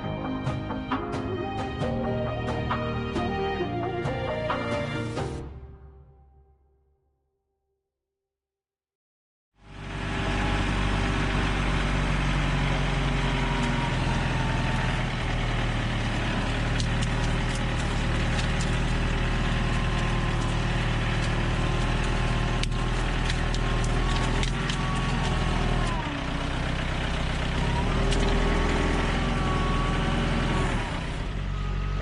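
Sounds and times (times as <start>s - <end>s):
tractor engine running: 9.6s - 32.0s
crack: 16.5s - 26.0s.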